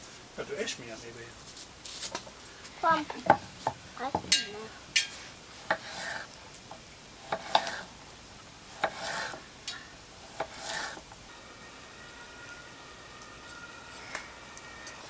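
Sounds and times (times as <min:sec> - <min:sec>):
knife blade scraping: 0:04.3 - 0:06.3, 0:07.3 - 0:07.9, 0:08.8 - 0:09.4, 0:10.3 - 0:11.0.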